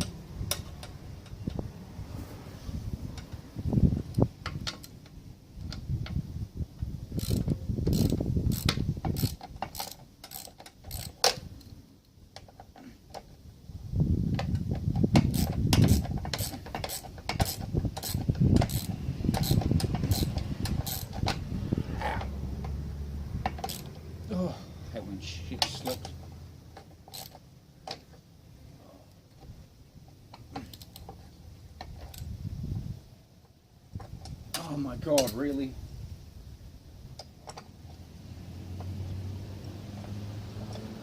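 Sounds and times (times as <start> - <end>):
ratchet spanner clicking: 7.2 - 11.8, 14.4 - 21.4, 23.4 - 24.0, 25.6 - 28.0
tools knocking and rubbing on metal: 14.4 - 21.4.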